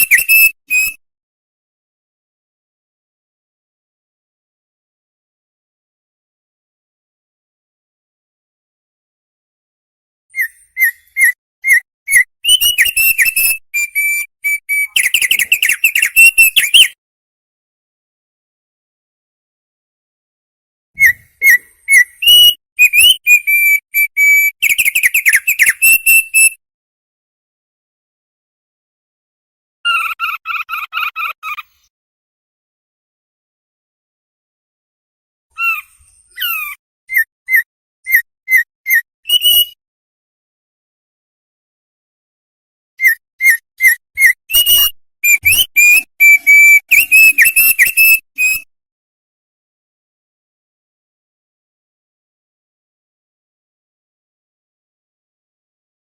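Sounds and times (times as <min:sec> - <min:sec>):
bird singing whistled notes: 0:00.0 - 0:01.0, 0:10.3 - 0:17.0, 0:21.0 - 0:26.6, 0:36.3 - 0:39.8, 0:43.0 - 0:48.7.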